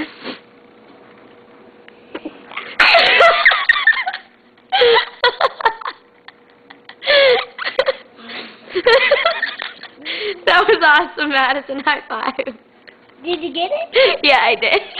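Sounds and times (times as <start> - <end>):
laughter and giggling: 2.8 - 8.1, 8.7 - 10.8.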